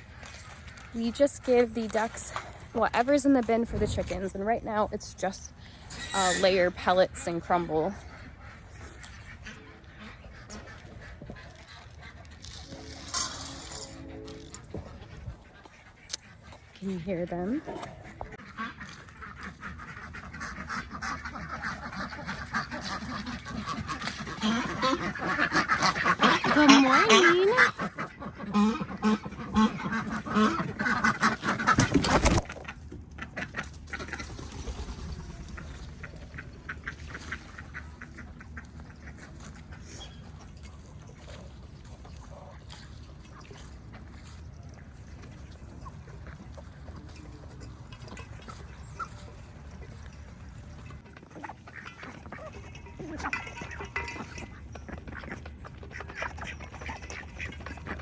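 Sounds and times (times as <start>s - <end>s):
ducks quacking: 0.0s - 41.3s, 42.2s - 58.0s.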